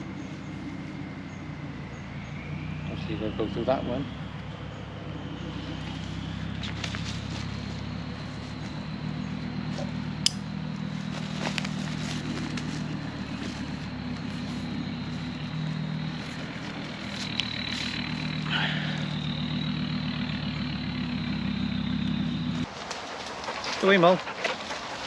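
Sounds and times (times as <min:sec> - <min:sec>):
engine idling: 0:00.0 - 0:25.0.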